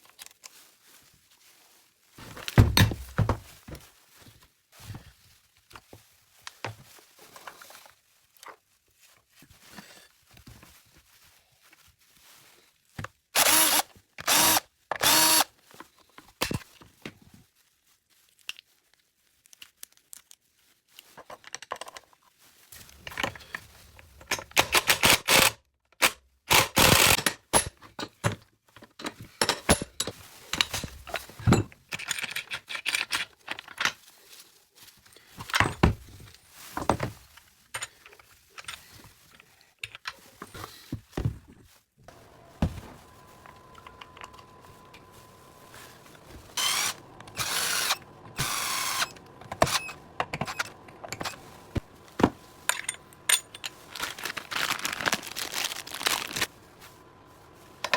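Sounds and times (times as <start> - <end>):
power drill whirring: 13.4 - 15.5, 24.7 - 25.6, 26.5 - 27.3, 45.6 - 51.8
tools clicking and knocking: 24.2 - 33.8.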